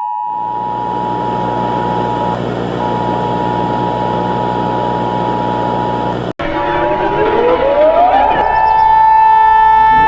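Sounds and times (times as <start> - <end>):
low buzzing hum: 0.1 - 10.0
emergency alert tone: 6.4 - 10.0.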